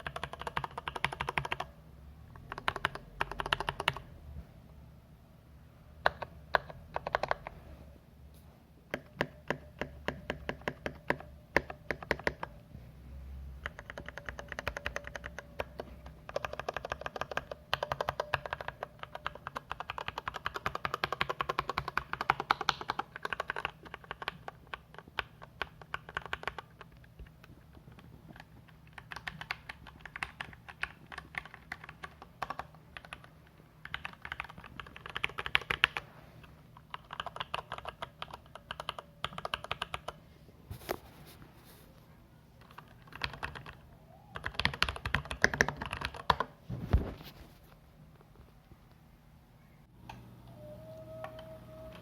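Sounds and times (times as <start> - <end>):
mechanical keyboard typing: 0.0 - 4.1, 6.0 - 7.6, 8.9 - 12.6, 13.6 - 36.0, 36.8 - 40.2, 42.6 - 46.6.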